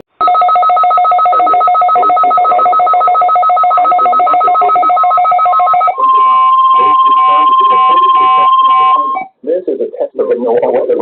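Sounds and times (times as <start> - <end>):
steady single-pitch alarm tone: 0.2 - 9.3
two-tone pulsing alert signal: 0.2 - 9.3.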